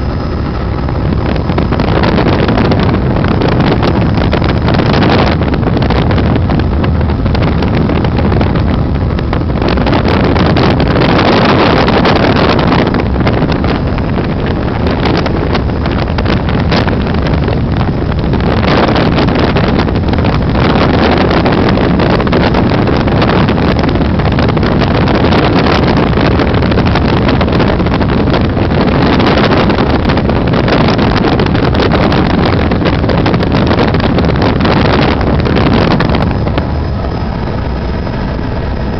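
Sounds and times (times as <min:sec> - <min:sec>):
helicopter engine and rotor: 0:00.0 - 0:19.6, 0:35.0 - 0:38.9
wind on microphone: 0:00.0 - 0:38.9.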